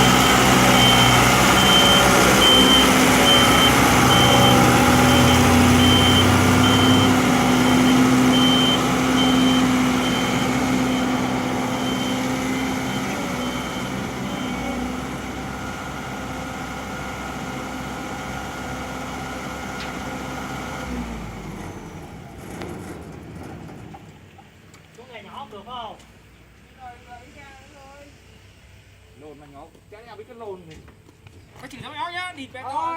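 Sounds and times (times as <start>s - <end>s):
reversing alarm beeping: 0.0s - 15.0s
diesel engine running: 0.0s - 24.7s.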